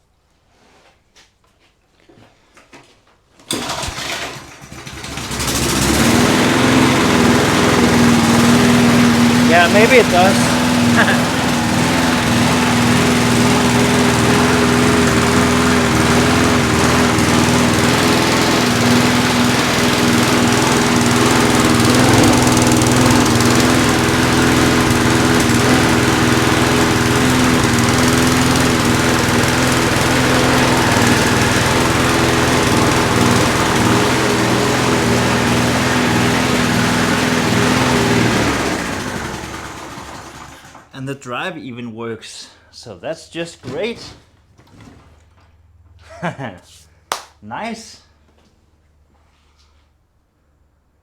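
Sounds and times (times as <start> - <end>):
lawn mower engine running: 3.5 - 40.9.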